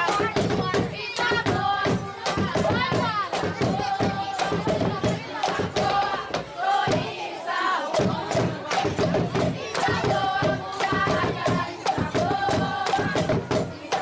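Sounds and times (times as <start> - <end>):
crowd noise: 0.0 - 14.0
group singing: 0.0 - 14.0
pounding drum beat: 0.0 - 14.0.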